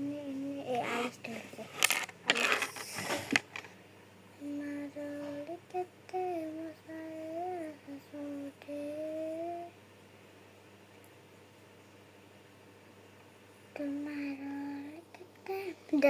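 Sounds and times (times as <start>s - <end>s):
child humming a tune: 4.4s - 9.8s, 13.8s - 16.0s.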